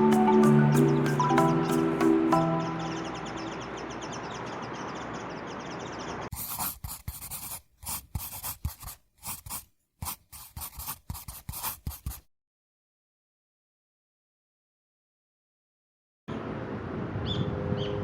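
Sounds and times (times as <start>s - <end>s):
background music: 0.0s - 4.0s
short scratching and scraping noises: 6.3s - 12.3s.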